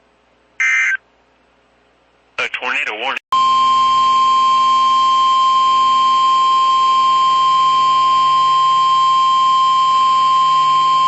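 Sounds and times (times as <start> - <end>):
high-pitched alarm tone: 3.4 - 11.0.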